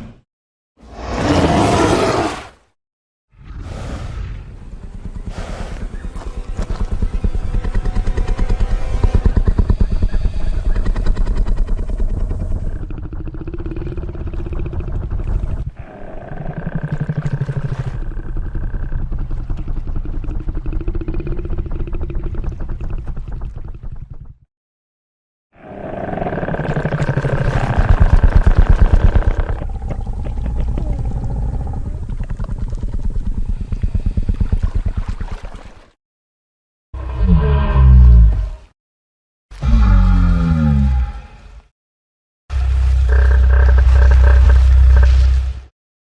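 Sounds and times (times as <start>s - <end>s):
low rumbling creature growl: 9.4s - 17.1s, 17.9s - 23.0s, 25.6s - 34.2s, 37.0s - 38.7s, 39.6s - 41.5s.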